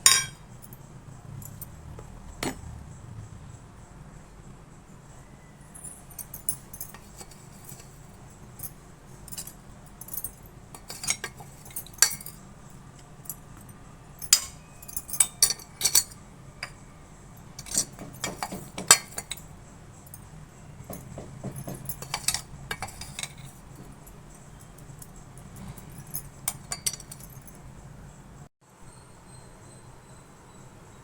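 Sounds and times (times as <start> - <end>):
kitchen utensils clinking: 0.0 - 2.8, 5.8 - 12.5, 13.1 - 27.8.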